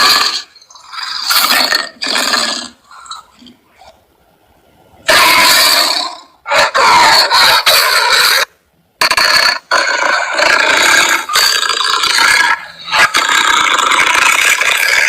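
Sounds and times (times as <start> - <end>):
harsh creature scraping and screeching: 5.1 - 8.5, 9.1 - 15.0.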